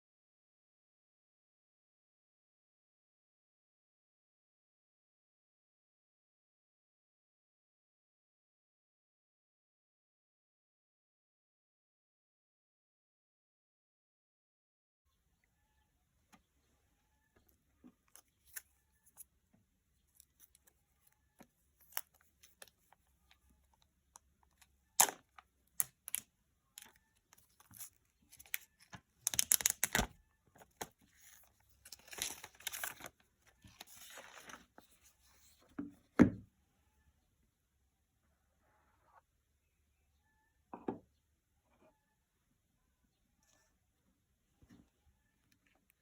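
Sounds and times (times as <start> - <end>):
packaging tearing and crinkling: 29.2 - 30.1, 31.8 - 33.1.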